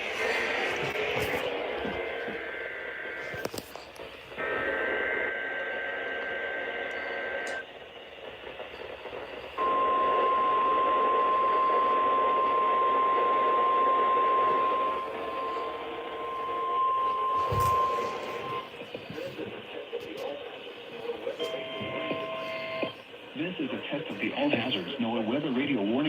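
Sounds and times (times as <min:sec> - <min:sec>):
radio background hiss: 0:00.0 - 0:26.0
steady warning alarm tone: 0:04.2 - 0:19.3, 0:20.8 - 0:26.0.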